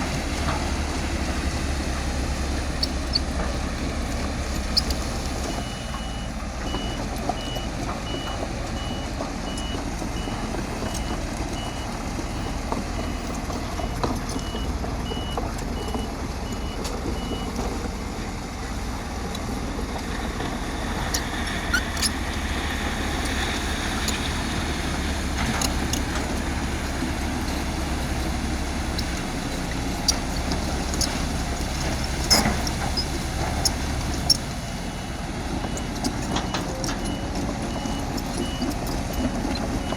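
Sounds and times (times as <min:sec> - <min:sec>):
bulldozer diesel engine running: 0:00.0 - 0:39.9
reversing alarm beeping: 0:05.4 - 0:17.6, 0:35.6 - 0:39.9.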